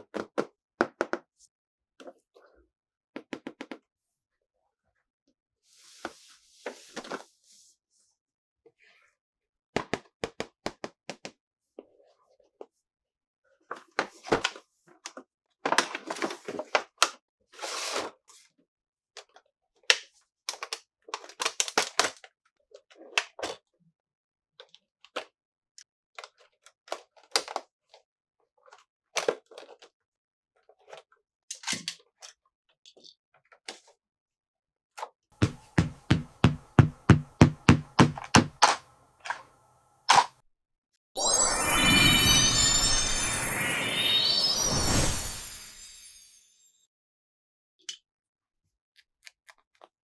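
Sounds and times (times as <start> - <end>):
rapid knocks: 35.4 - 38.6.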